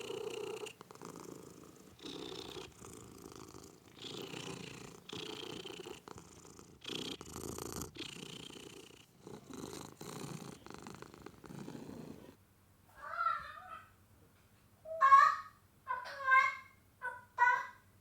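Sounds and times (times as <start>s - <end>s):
cat purring: 0.0s - 12.4s.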